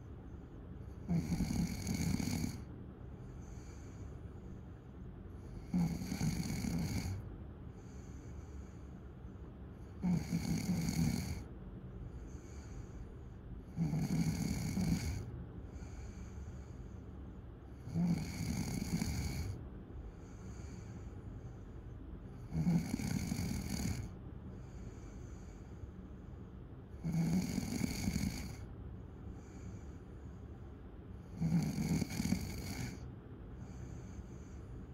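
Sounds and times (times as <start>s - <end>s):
soft breaths: 0.0s - 34.9s
loud snoring: 1.0s - 2.7s, 5.5s - 7.2s, 10.0s - 11.5s, 13.7s - 15.3s, 17.8s - 19.6s, 22.4s - 24.1s, 27.0s - 28.7s, 31.2s - 33.1s.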